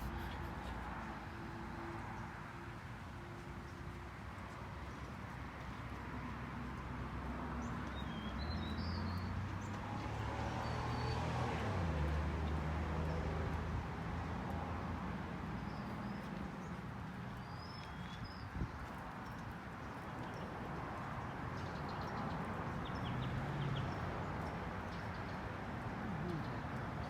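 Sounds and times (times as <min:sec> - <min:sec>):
small birds chirping: 0:15.6 - 0:27.0.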